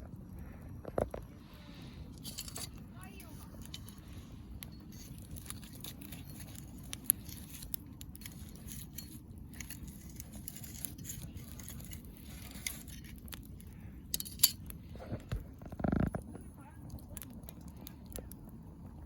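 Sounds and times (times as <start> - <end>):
low steady rumble: 0.0 - 19.0
wood fire crackling and popping: 0.0 - 19.0.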